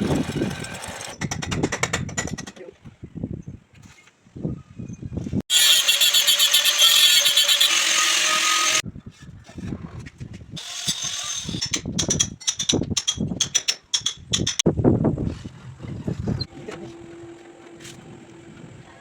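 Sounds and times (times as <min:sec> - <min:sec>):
power tool on steel: 0:05.5 - 0:08.8.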